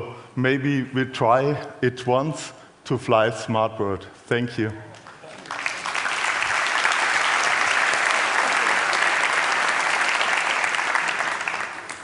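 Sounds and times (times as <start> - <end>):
audience applauding: 5.0 - 12.0.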